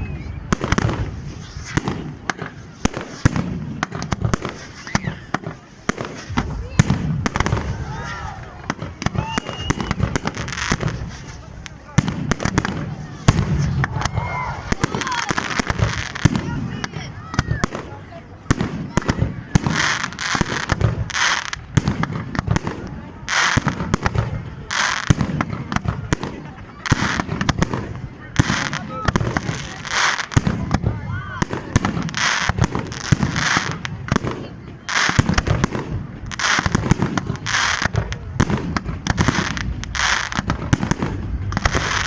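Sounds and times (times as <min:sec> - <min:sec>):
fireworks bangs: 0:00.0 - 0:42.0
fireworks hiss and crackle: 0:00.0 - 0:42.0
firework shells bursting: 0:31.4 - 0:42.0.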